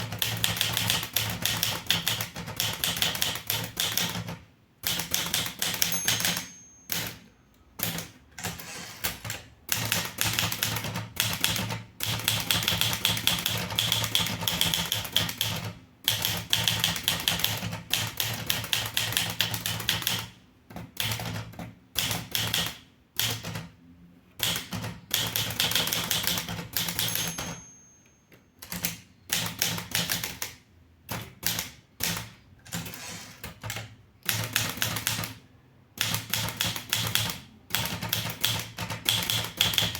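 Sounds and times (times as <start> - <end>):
typewriter keystrokes: 0.0 - 7.2, 7.8 - 23.8, 24.4 - 27.6, 28.6 - 35.4, 36.0 - 39.9
typewriter bell ring: 5.5 - 8.6, 26.8 - 28.9.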